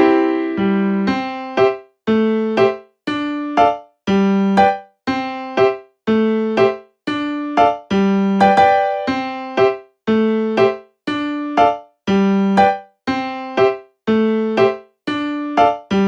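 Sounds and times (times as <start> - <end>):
electric piano pattern: 0.0 - 16.0.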